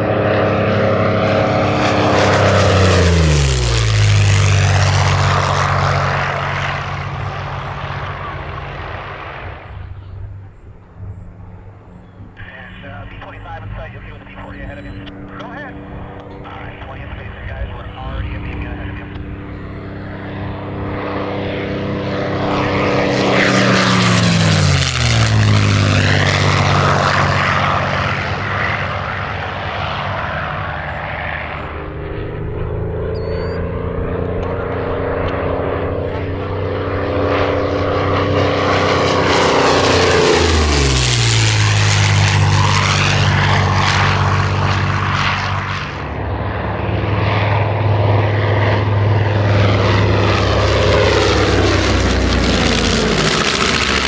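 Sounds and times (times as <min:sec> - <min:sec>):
propeller plane passing by: 0:00.0 - 0:54.0.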